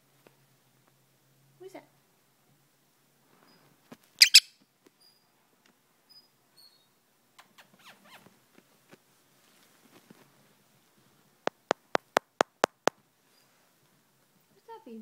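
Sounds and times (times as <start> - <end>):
sharp taps on a phone: 11.5 - 13.0.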